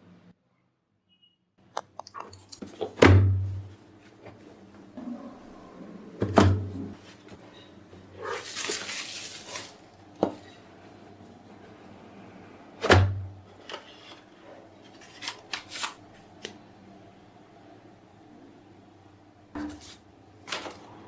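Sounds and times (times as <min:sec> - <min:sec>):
packaging rustling: 0:08.2 - 0:10.0, 0:14.8 - 0:16.0.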